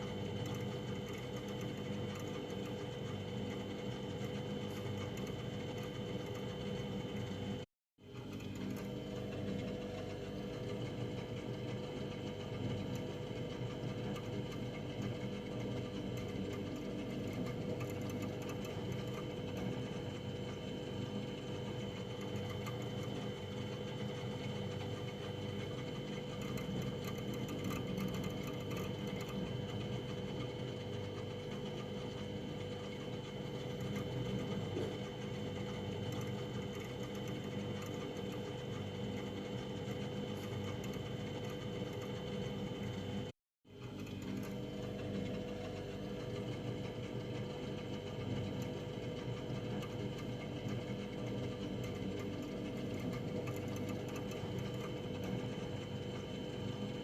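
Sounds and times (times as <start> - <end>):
freezer humming: 0.0 - 57.0.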